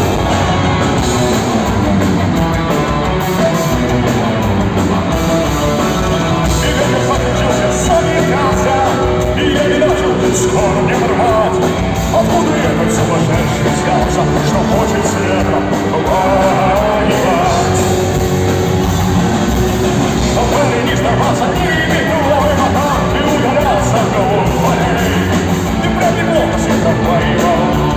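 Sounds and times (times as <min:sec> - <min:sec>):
drums: 0:00.0 - 0:27.9
electric guitars: 0:00.0 - 0:27.9
person singing: 0:05.6 - 0:18.5, 0:20.1 - 0:27.9.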